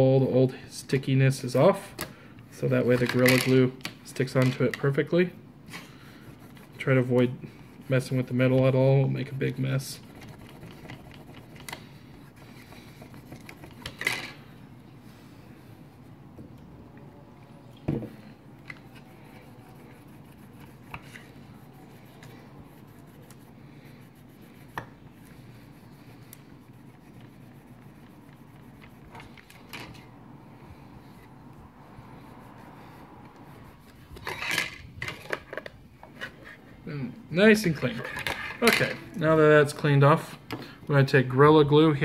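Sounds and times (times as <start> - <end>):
steady low hum: 0.0 - 42.0
rag rubbing phone frame: 6.0 - 14.4, 18.8 - 30.1, 30.8 - 34.5.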